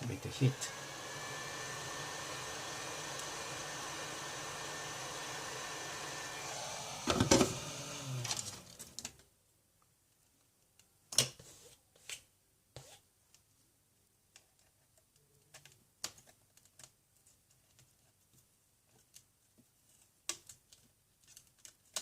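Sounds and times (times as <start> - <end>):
hot-air blower running: 0.0 - 8.8
blower switched off clatter: 6.0 - 8.8.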